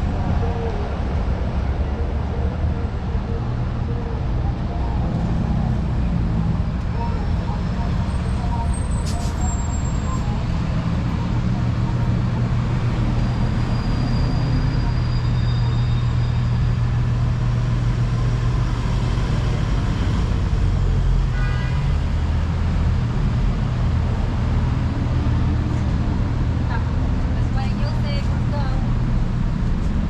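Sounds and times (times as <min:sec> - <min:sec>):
street traffic: 0:00.0 - 0:30.0.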